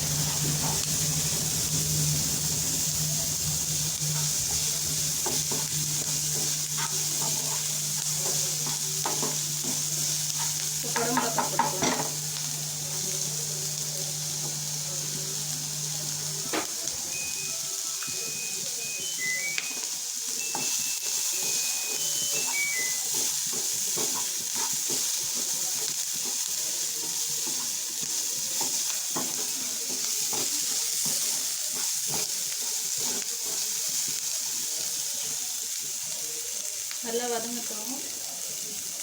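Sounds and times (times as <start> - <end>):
vegetables sizzling in oil: 0.0 - 39.0
spatula scraping pan: 4.1 - 12.7
high tune of beeps: 17.1 - 23.2.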